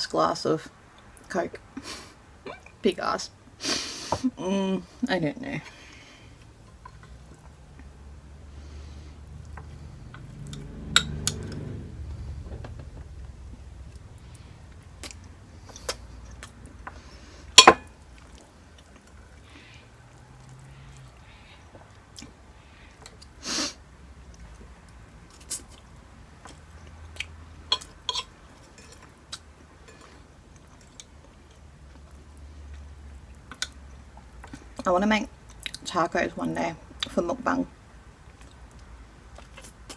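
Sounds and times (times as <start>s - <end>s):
close chewing: 18.0s - 23.4s, 24.2s - 34.8s.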